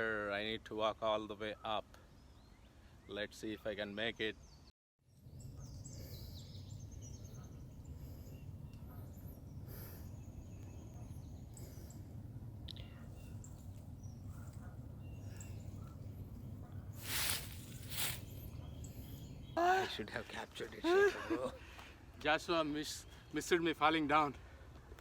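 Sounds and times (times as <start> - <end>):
small birds chirping: 1.4 - 20.9, 21.8 - 24.4
steady low rumble: 5.2 - 19.6.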